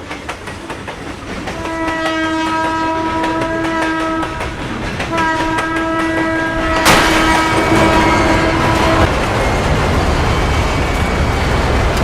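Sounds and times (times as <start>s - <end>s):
train wheels clacking: 0.0s - 12.0s
train horn blast: 1.5s - 4.4s, 5.1s - 9.1s.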